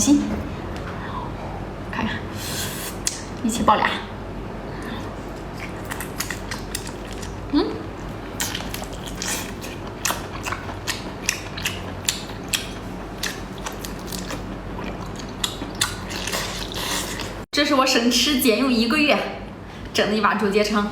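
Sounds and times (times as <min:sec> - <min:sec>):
crunchy eating and chewing: 0:04.7 - 0:17.5.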